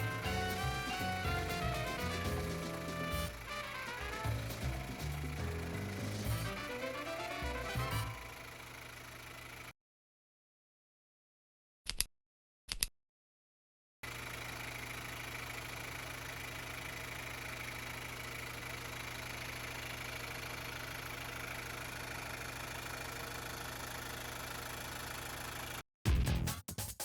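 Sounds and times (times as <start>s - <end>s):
car engine idling: 0.0s - 9.7s, 14.1s - 25.8s.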